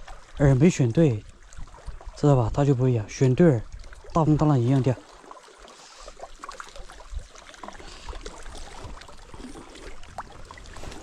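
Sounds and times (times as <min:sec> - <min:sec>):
choppy water splashing: 0:00.0 - 0:11.0
wind rumbling on microphone: 0:06.9 - 0:11.0.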